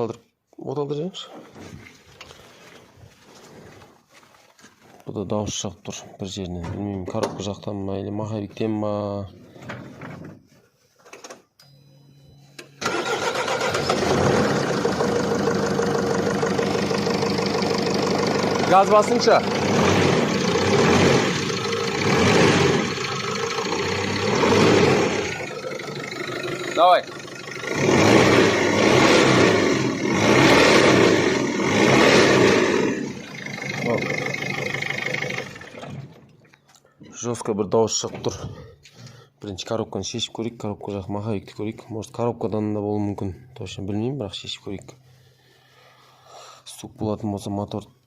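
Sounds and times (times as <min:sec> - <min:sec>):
diesel engine starting and running: 0:12.6 - 0:36.5.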